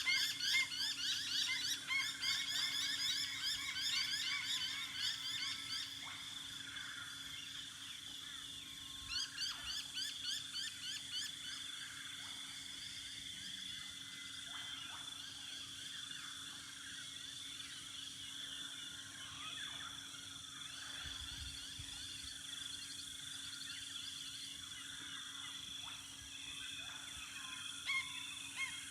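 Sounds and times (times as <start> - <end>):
birds singing and calling: 0.0 - 6.3.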